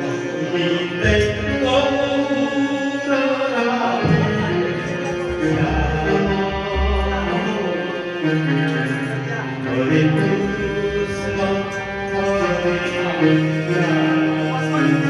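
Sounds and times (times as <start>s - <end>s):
devotional singing: 0.0s - 15.0s
sustained instrumental notes: 0.0s - 15.0s
low drum strokes: 4.0s - 7.4s.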